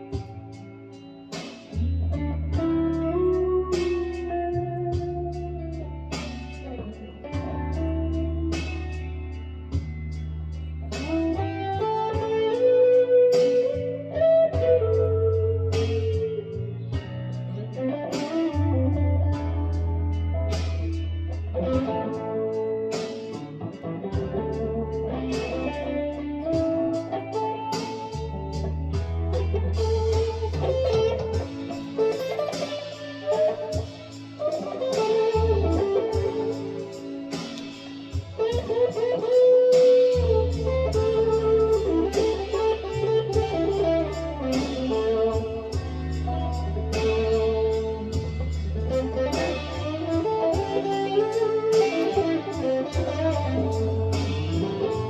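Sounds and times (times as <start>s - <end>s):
electric guitar lead melody: 0.0s - 55.0s
held low bass notes: 1.8s - 12.4s, 13.8s - 22.1s, 24.1s - 32.0s, 40.2s - 55.0s.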